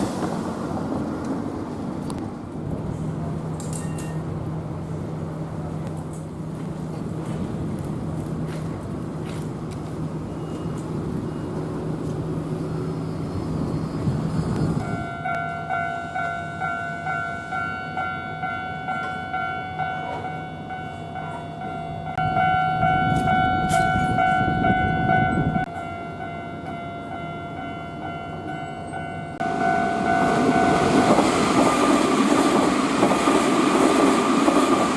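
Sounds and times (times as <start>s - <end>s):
train rumble: 0.0s - 34.9s
level crossing bell clanging: 14.8s - 31.0s.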